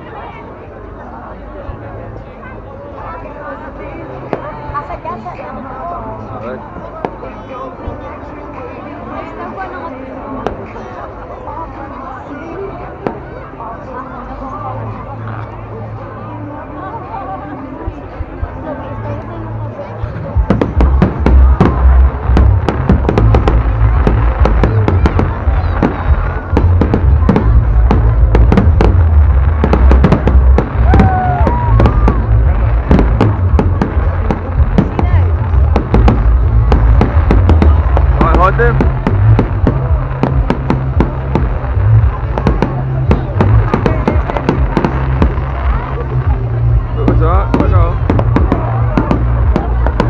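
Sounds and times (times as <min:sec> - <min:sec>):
low rumble of bursting shells: 0:20.4 - 0:45.9
fireworks bangs: 0:20.4 - 0:50.0.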